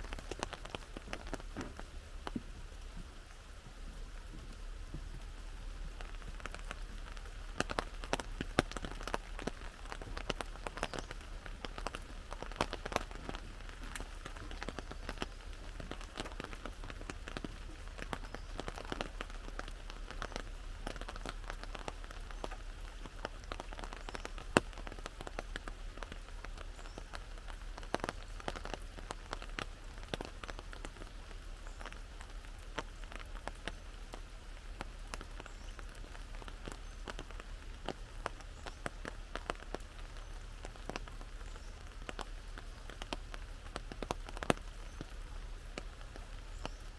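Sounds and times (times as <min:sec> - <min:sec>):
raindrops hitting an umbrella: 0:00.0 - 0:46.9
steady hiss of rain: 0:00.0 - 0:46.9.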